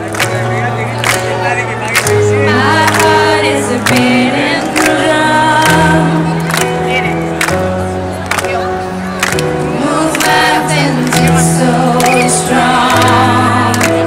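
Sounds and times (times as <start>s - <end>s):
woman singing: 2.5s - 6.4s, 9.7s - 14.0s.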